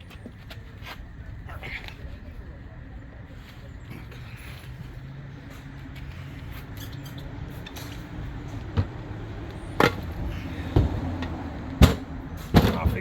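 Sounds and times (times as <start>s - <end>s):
sharp knocks on tire rim: 9.8s - 10.1s, 10.7s - 13.0s.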